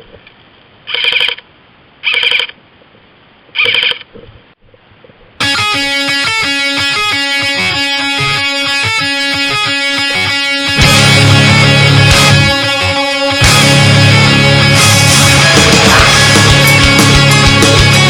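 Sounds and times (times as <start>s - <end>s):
heavy metal music: 5.4s - 18.0s.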